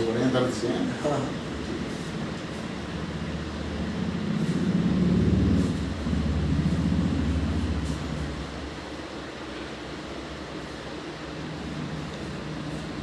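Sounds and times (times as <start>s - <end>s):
electric massager buzzing: 0.0s - 9.3s.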